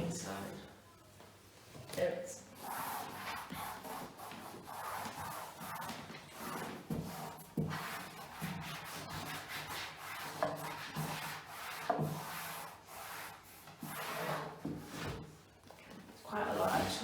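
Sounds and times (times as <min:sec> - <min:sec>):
rubbing on wooden drawer: 0:02.6 - 0:15.4.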